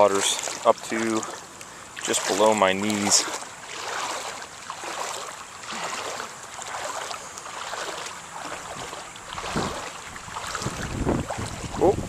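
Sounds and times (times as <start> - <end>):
water sloshing with strides: 0.0 - 12.0
wind buffeting microphone: 8.4 - 12.0.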